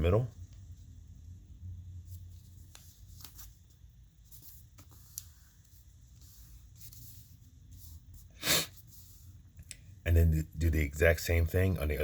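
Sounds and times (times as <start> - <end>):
paper rustling and crackling: 2.2 - 8.0.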